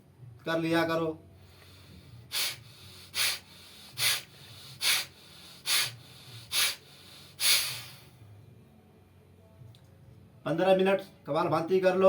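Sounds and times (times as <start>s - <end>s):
forceful nasal exhalations: 1.4s - 8.2s.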